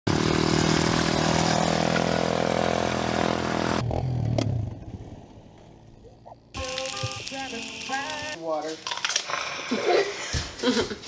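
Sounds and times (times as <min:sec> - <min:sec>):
atv engine revving: 0:00.1 - 0:06.0.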